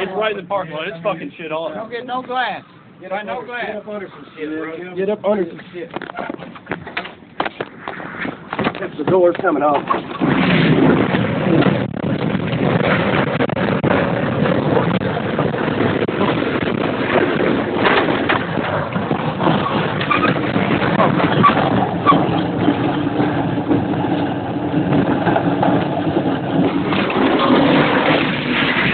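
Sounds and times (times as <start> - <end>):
debris knocking and banging: 6.0 - 28.9
roaring tornado wind: 8.3 - 28.9.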